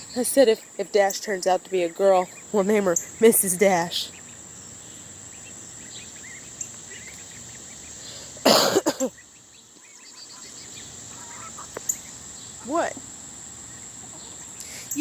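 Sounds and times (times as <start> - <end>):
faint bird chirps: 0.0 - 8.4, 9.0 - 15.0
insects trilling: 0.0 - 15.0.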